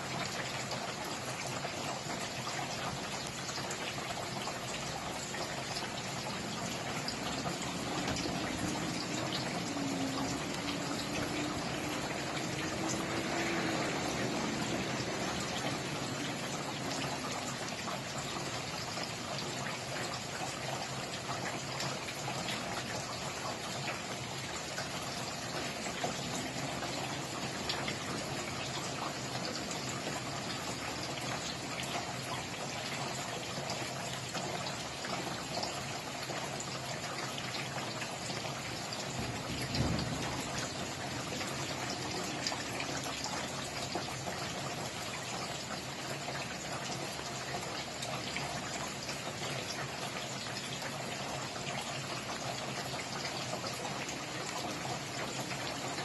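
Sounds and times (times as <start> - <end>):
steady rain pattering: 0.0 - 56.0.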